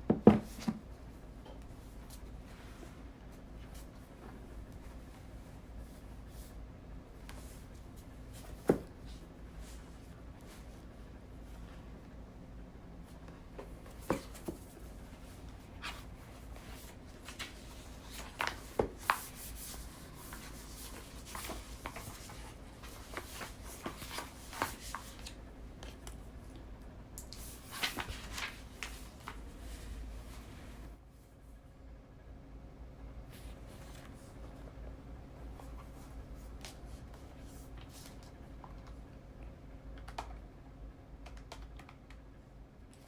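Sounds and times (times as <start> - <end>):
paper being handled: 13.6 - 25.4, 27.4 - 30.5.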